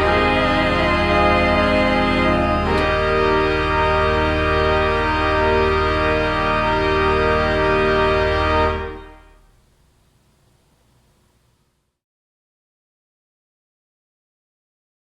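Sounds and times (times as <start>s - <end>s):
organ playing sustained chords: 0.0s - 11.3s.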